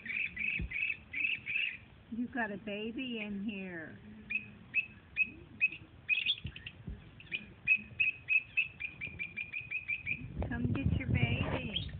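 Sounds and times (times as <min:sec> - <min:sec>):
baby bird cheeping: 0:00.0 - 0:01.9, 0:04.3 - 0:10.4, 0:11.6 - 0:11.9.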